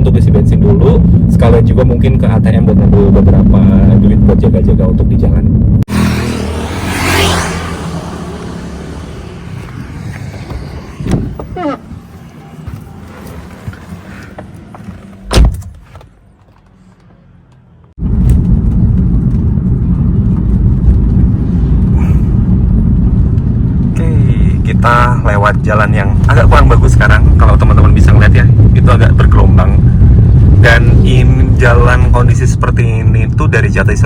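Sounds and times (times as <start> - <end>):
car driving rumble: 0.0 - 34.0
road noise rumble: 0.0 - 34.0
loud thump: 10.3 - 11.6, 15.3 - 15.8.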